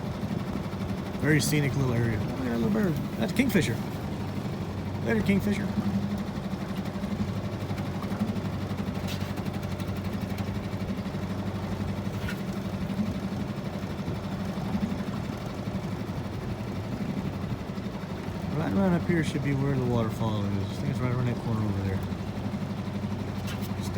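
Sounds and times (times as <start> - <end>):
outboard motor running: 0.0 - 23.9.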